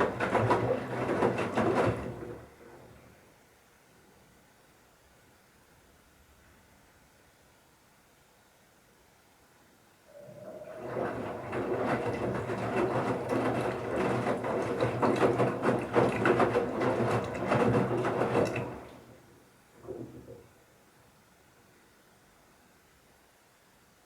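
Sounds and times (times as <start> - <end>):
washing machine motor humming: 0.0 - 3.1, 10.1 - 20.5
towels tumbling with knocks: 11.0 - 19.1.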